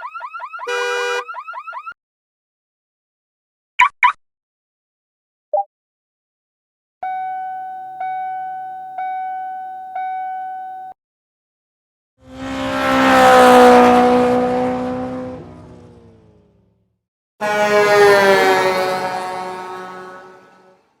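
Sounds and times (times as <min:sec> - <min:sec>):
vehicle horn passing: 0:00.6 - 0:01.3, 0:17.4 - 0:20.9.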